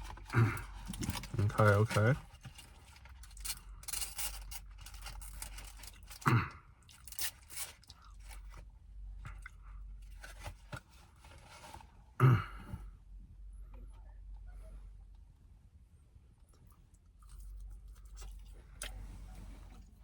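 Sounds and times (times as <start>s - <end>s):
chewing and crunching food: 0.0s - 11.0s, 16.3s - 20.0s.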